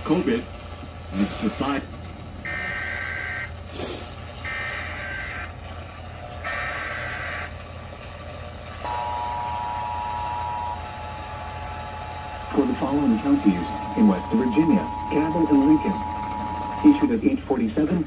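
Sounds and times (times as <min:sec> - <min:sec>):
steady two-tone attention signal: 0:08.8 - 0:11.2, 0:12.5 - 0:17.4
buzzy data bursts: 0:12.6 - 0:17.2.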